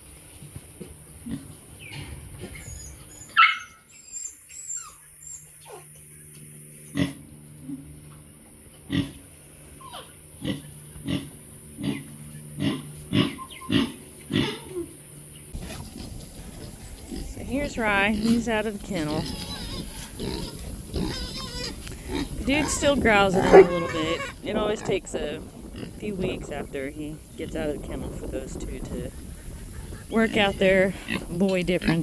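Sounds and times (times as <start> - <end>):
animal grunts: 9.8 - 14.9, 15.6 - 26.7.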